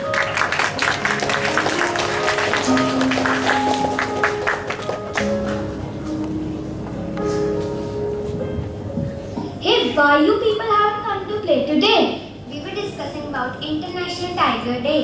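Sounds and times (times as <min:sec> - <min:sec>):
people clapping: 0:00.0 - 0:05.8
instrumental music with held notes: 0:00.0 - 0:09.6.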